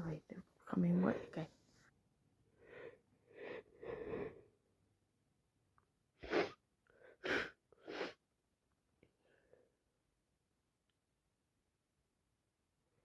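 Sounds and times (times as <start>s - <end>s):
breathy inhale: 2.6s - 4.5s.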